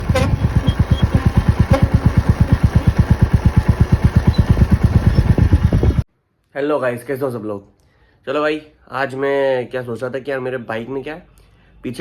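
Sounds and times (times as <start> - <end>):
motorcycle engine idling: 0.0 - 6.0.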